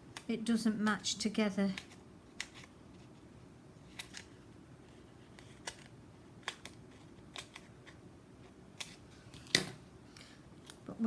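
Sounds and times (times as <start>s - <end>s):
faint room hum: 0.0s - 11.0s
paper card clicks and rustles: 1.7s - 3.1s, 3.9s - 8.0s.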